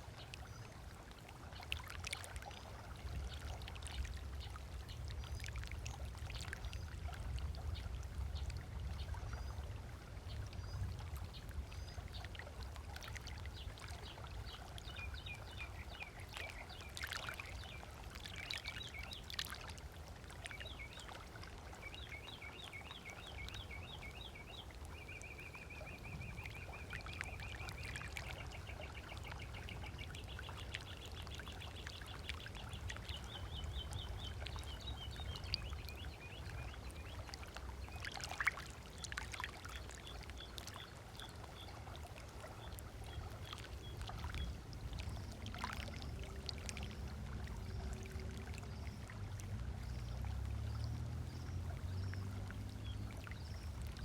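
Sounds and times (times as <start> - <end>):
water lapping against shore: 0.0 - 54.0
songbirds chirping and trilling: 13.1 - 19.6, 20.4 - 41.8.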